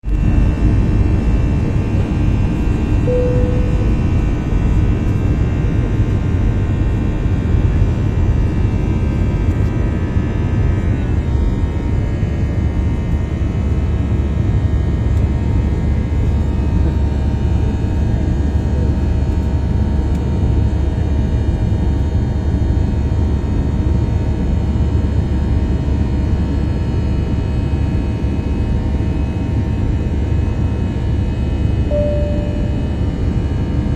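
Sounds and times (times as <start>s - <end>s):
airplane cabin roar: 0.1s - 24.8s, 26.6s - 33.9s
brief high tone: 3.0s - 4.8s, 31.9s - 33.2s.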